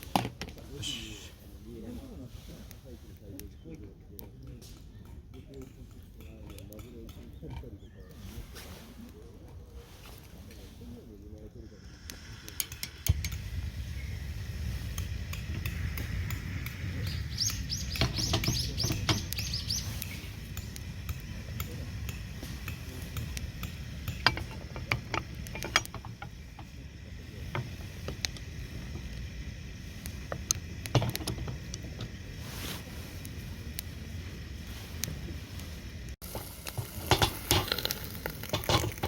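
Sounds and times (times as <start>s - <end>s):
steady low rumble: 10.8s - 39.0s
small bird chirping: 15.7s - 20.4s.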